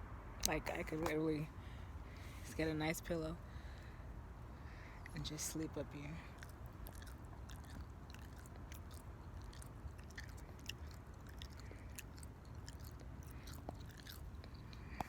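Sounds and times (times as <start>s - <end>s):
low steady rumble: 0.0s - 15.0s
close-up clicks and crackles: 0.4s - 1.4s, 5.0s - 15.0s.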